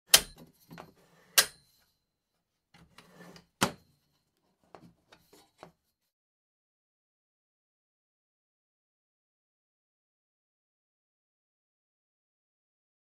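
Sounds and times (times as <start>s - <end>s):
short scrape: 2.9s - 3.6s.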